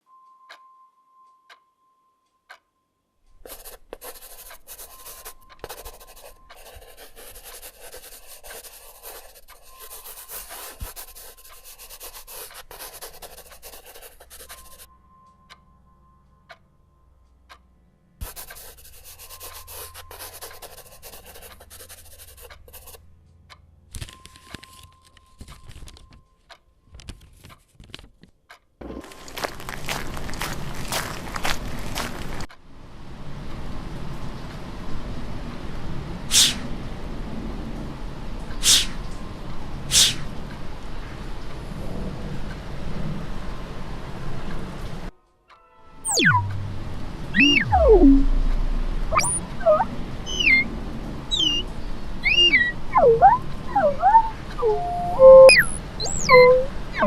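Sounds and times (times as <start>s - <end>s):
rough rubbing noise: 36.3s - 36.6s, 38.6s - 39.0s, 39.9s - 40.3s.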